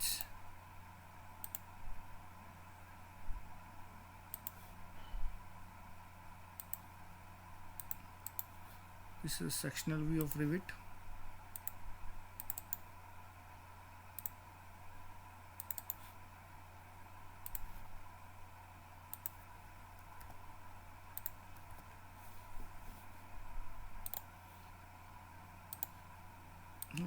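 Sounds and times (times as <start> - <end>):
faint electrical hum: 0.0 - 27.0
computer mouse clicking: 1.4 - 1.7, 4.3 - 4.7, 6.6 - 6.9, 7.8 - 8.5, 10.2 - 10.4, 11.5 - 11.8, 12.4 - 12.8, 14.2 - 14.4, 15.6 - 16.1, 17.4 - 17.8, 19.1 - 19.4, 21.1 - 21.9, 24.0 - 24.3, 25.7 - 26.0, 26.8 - 27.0.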